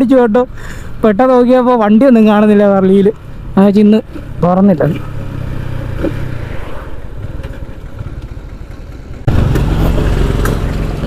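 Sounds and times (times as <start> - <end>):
motorcycle engine running: 7.2 - 11.0.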